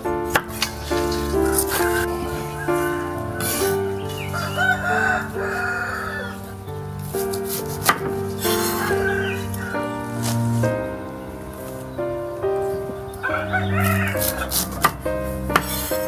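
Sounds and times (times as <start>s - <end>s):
background music sustained notes: 0.0s - 16.0s
rooster crowing: 1.4s - 6.7s, 8.6s - 10.2s, 13.2s - 14.8s.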